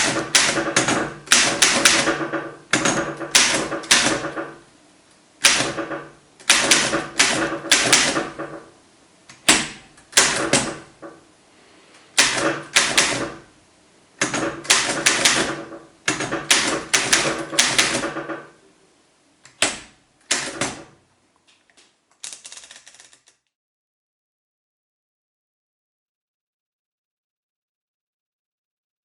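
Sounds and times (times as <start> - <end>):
manual typewriter clacking: 0.0 - 4.5, 5.4 - 8.6, 9.4 - 10.8, 12.2 - 13.4, 14.2 - 18.4, 19.6 - 20.9, 22.2 - 23.4.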